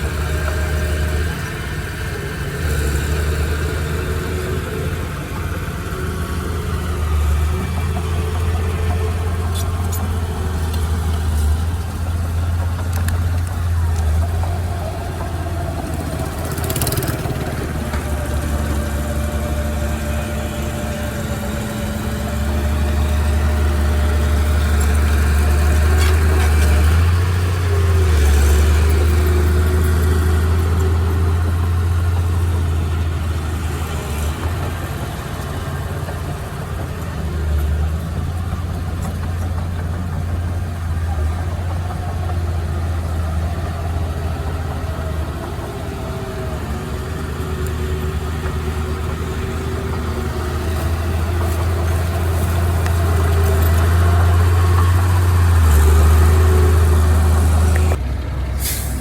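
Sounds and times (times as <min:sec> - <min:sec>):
heavy machinery engine drone: 0:00.0 - 0:59.0.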